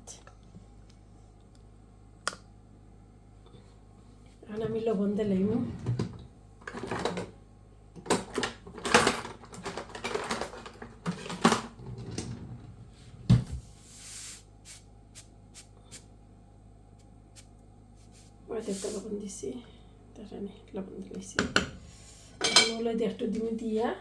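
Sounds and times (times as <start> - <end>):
kitchen utensils clattering: 8.1 - 12.4, 22.4 - 22.9.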